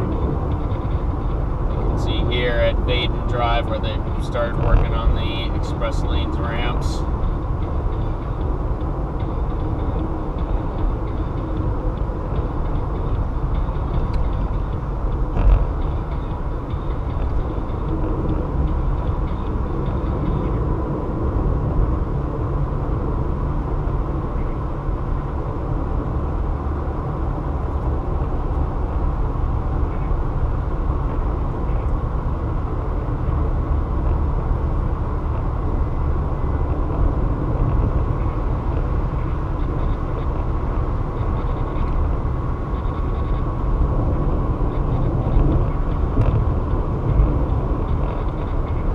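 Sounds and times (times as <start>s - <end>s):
car driving at highway speed: 0.0s - 48.9s.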